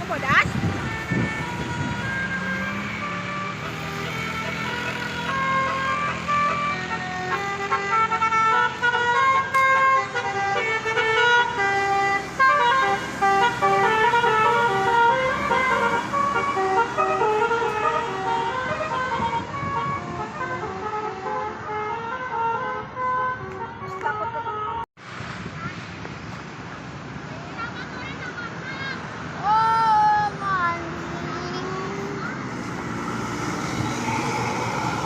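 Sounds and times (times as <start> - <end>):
multi-tone air horn tune: 6.3 - 24.8.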